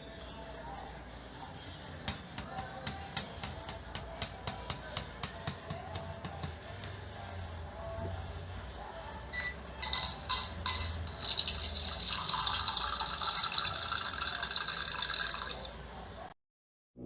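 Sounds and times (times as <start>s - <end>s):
liquid pouring: 10.0s - 15.8s.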